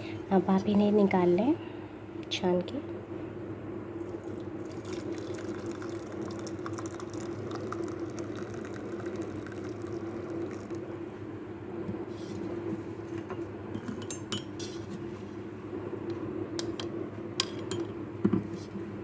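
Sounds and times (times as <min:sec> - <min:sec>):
liquid dripping: 0:04.0 - 0:10.9
tea pouring into a cup: 0:04.0 - 0:10.9.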